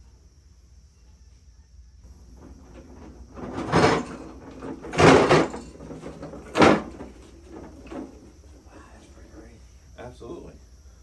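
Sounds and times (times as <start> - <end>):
loud short bumps or scrapes: 2.3 - 8.4.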